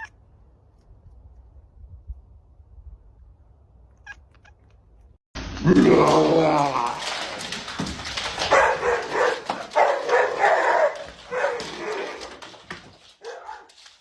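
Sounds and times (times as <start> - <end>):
dog barking: 8.4 - 12.4, 13.2 - 13.7.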